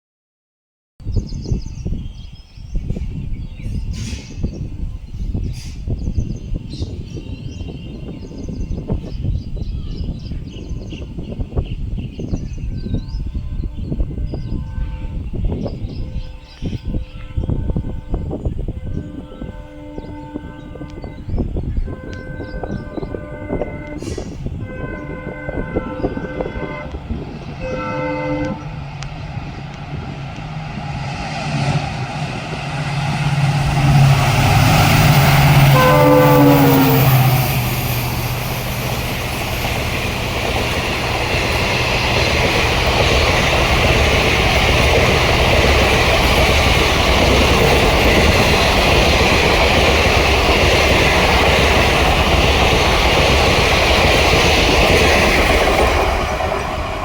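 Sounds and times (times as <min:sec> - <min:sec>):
locomotive deep rumble: 0:02.8 - 0:57.0
train coaches rolling past: 0:02.8 - 0:57.0
locomotive horn: 0:13.4 - 0:54.2.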